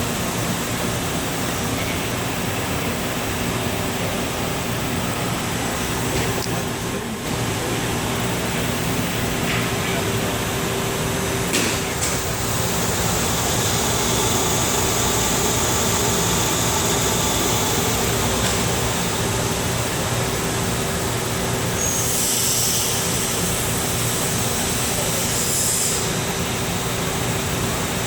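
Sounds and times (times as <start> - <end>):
grinder machine humming: 4.3 - 25.6.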